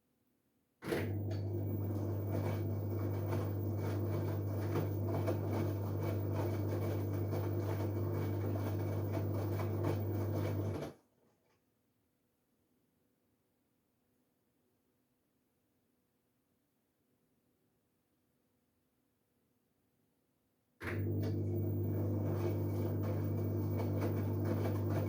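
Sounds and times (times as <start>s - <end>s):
washing machine motor hum: 0.9s - 10.9s, 20.8s - 25.0s.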